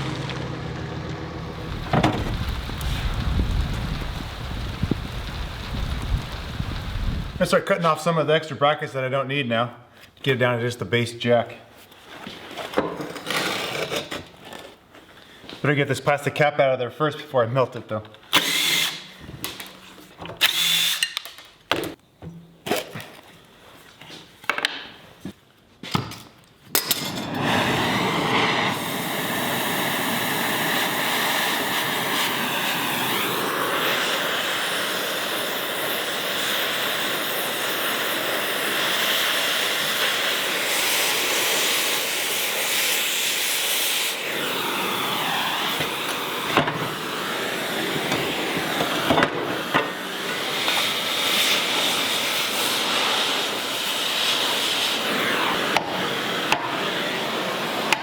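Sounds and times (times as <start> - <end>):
cutting torch hissing: 1.4 - 7.8, 18.4 - 19.7, 27.0 - 58.0.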